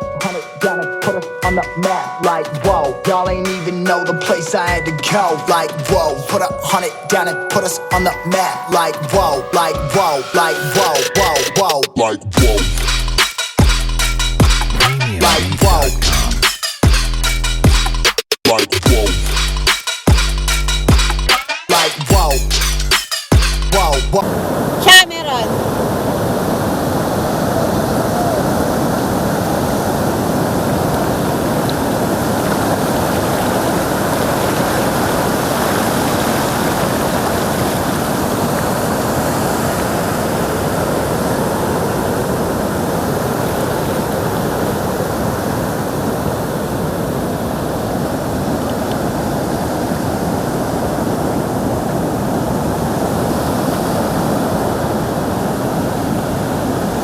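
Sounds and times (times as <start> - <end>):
ocean surf rushing: 0.0 - 11.8, 24.2 - 57.0.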